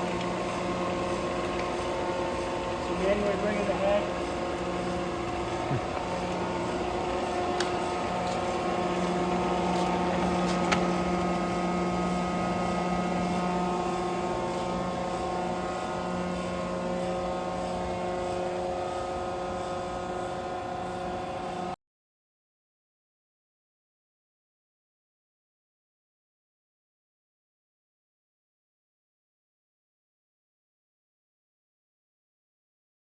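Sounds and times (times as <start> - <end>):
grinder machine hum: 0.0 - 21.8.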